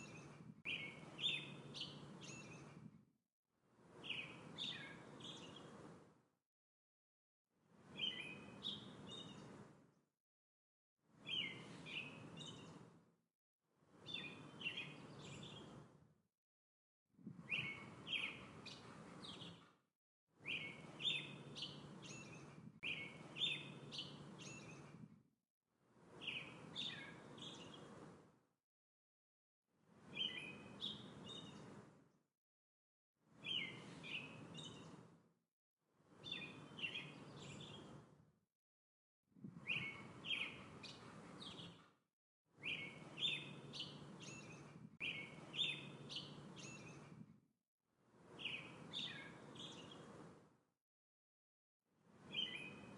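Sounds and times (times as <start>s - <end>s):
small songbird chirping: 0.0s - 2.9s, 3.9s - 6.0s, 7.8s - 9.8s, 11.2s - 13.0s, 13.9s - 15.9s, 17.4s - 19.7s, 20.4s - 25.1s, 26.1s - 28.1s, 30.0s - 31.8s, 33.4s - 35.1s, 36.1s - 38.1s, 39.6s - 41.9s, 42.6s - 47.2s, 48.3s - 50.2s, 52.2s - 52.9s.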